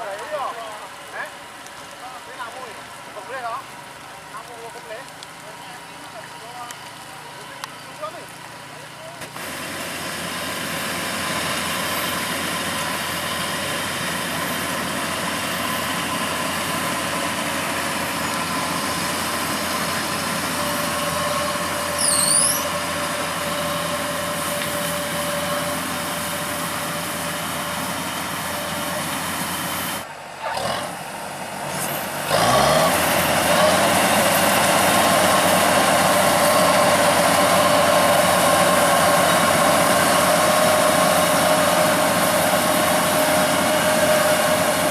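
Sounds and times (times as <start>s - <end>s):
combine harvester engine running: 9.2s - 44.9s
short high chirp: 22.0s - 22.7s.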